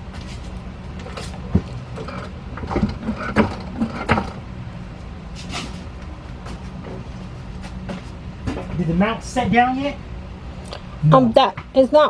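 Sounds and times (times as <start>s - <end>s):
steady low hum: 0.0s - 12.0s
jack clicking and clunking: 0.2s - 4.8s.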